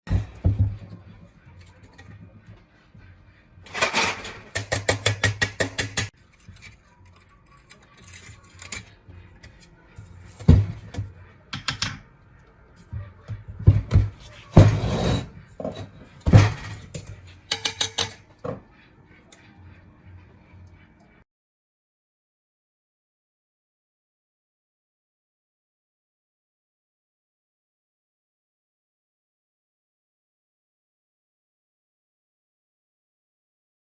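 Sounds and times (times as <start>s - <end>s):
metal tools clanking on workbench: 3.7s - 4.8s, 14.6s - 18.6s.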